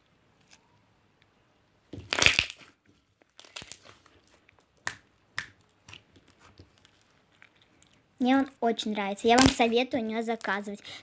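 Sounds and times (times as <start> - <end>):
slime clicking and crackling: 2.0 - 8.6, 9.2 - 9.7.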